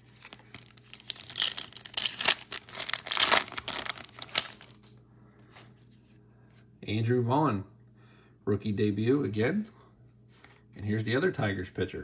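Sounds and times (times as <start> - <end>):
foil wrapper tearing and crinkling: 0.0 - 4.9.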